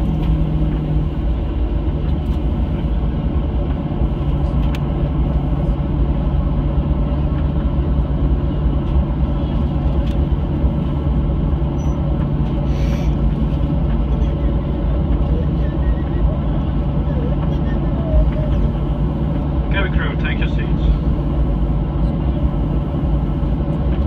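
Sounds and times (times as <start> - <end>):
airliner cabin engine rumble: 0.0 - 24.0.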